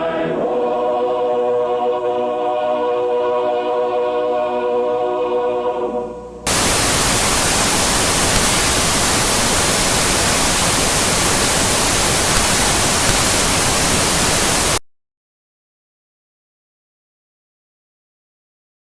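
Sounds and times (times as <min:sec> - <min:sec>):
music: 0:00.0 - 0:06.4
tv static hiss: 0:06.5 - 0:14.8.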